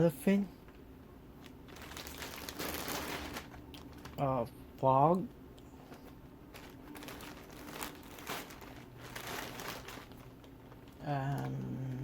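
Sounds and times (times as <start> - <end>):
plastic packaging crinkling: 1.4 - 4.5, 5.8 - 11.9.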